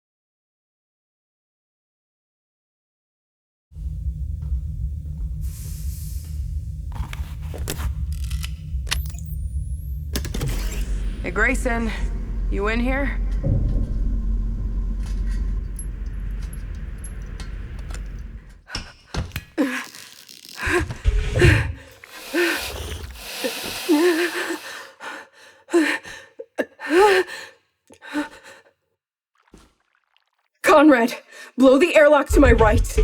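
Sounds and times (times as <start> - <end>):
low rumble: 3.8 - 18.7, 20.7 - 23.4, 32.3 - 33.0
pitch-bending vocal sounds: 20.6 - 23.6.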